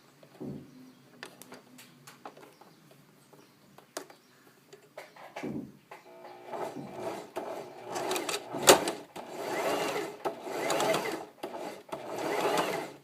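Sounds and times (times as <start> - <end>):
sewing machine running: 6.4 - 13.0.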